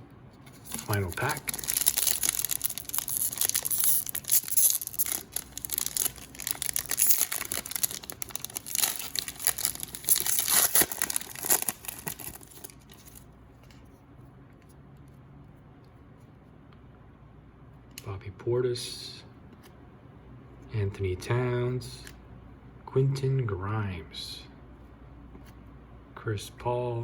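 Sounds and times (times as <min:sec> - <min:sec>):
plastic wrapper tearing and crinkling: 0:00.5 - 0:13.2.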